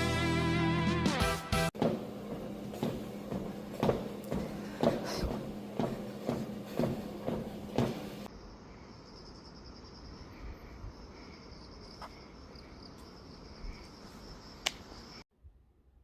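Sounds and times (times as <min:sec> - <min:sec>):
faint insect chirps: 0:08.3 - 0:15.2
insects trilling: 0:08.3 - 0:15.2.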